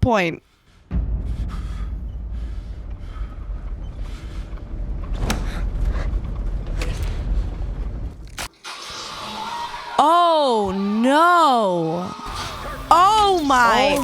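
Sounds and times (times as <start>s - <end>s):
low rumbling drone: 0.5s - 8.5s
creaks and knocks: 2.6s - 8.4s.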